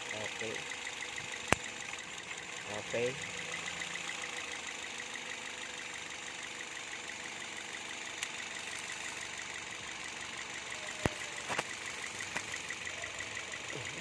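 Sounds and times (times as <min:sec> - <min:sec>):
car engine idling with ticking: 0:00.0 - 0:14.0
sharp clicks: 0:00.5 - 0:02.1, 0:07.4 - 0:14.0.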